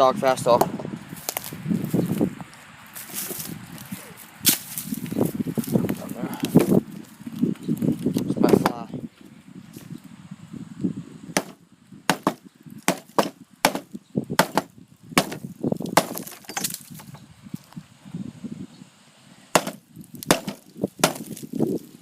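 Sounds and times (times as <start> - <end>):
tomahawk striking a brick: 8.4 - 8.8, 11.4 - 17.2, 19.5 - 21.6.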